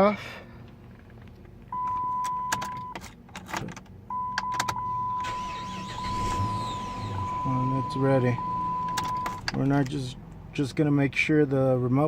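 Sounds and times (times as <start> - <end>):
high electronic beep: 4.2 - 9.5.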